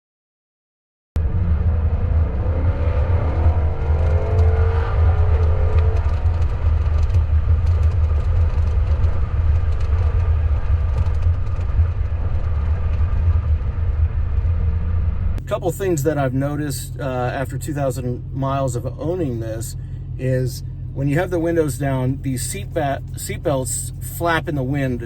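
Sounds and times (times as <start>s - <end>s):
wind buffeting: 1.2s - 15.4s
car engine: 1.2s - 25.0s
seatbelt flapping in wind: 3.8s - 14.7s.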